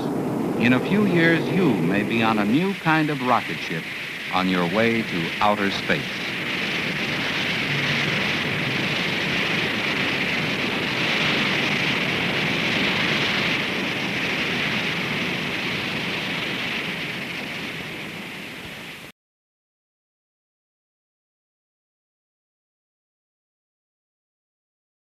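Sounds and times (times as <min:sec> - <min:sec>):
rocket engine roaring: 0:00.0 - 0:19.1.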